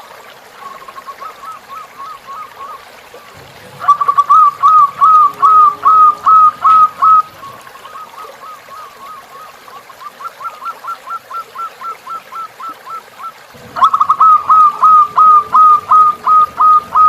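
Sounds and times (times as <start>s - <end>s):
running water trickling: 0.0s - 17.0s
bird whistling: 3.8s - 17.0s.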